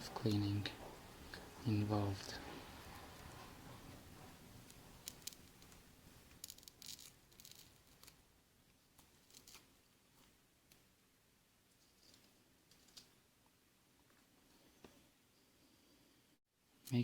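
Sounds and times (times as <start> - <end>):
adhesive scraping and clicking: 2.2 - 8.2, 9.0 - 10.8.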